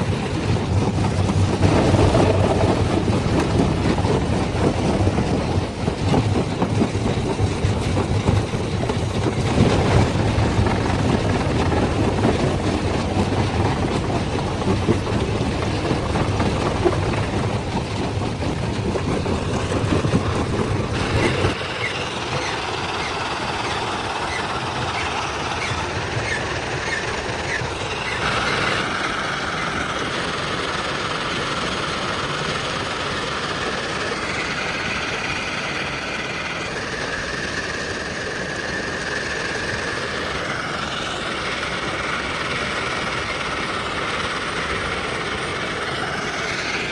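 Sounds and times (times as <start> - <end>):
stone crushing machinery rumbling: 0.0 - 29.8.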